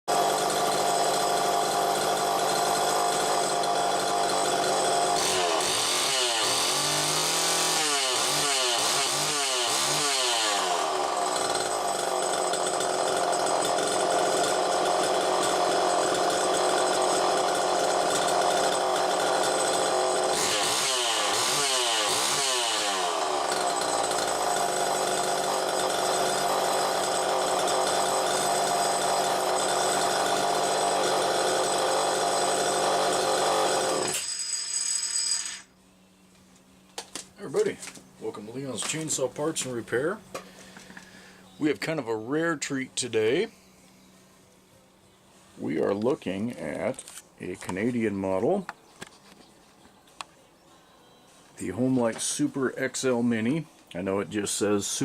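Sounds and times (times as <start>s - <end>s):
chainsaw engine revving: 0.1s - 35.7s.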